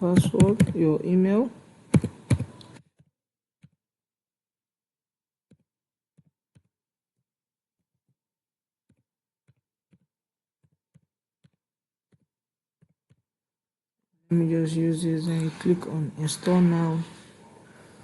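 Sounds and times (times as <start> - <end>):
computer keys and mouse clicks: 0.0 - 0.8, 1.9 - 3.0.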